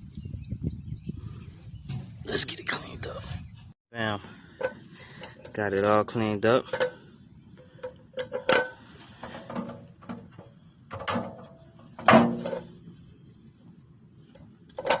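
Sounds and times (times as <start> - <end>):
hard parts knocking and clunking: 7.7 - 12.8.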